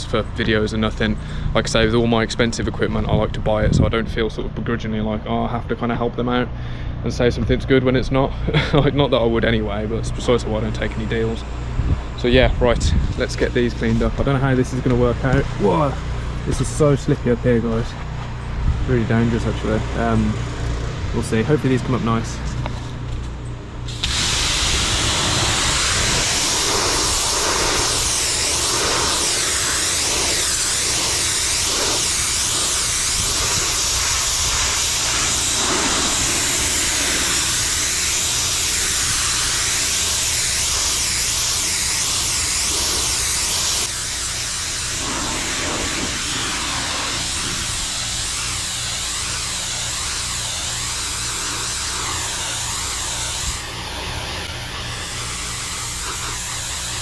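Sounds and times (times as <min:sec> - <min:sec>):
low engine drone: 0:04.3 - 0:57.0
pressure washer water jet hissing: 0:23.8 - 0:57.0.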